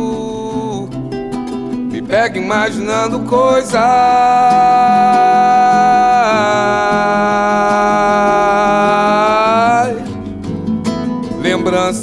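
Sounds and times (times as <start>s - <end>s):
guitar accompaniment: 0.0s - 12.0s
person singing long note: 3.4s - 10.1s.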